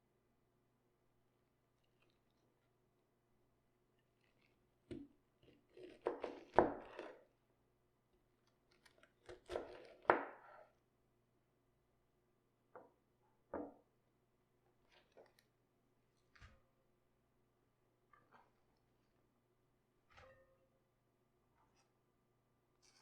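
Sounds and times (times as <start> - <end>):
knife cutting crunchy cabbage: 5.4 - 7.2, 8.7 - 10.3.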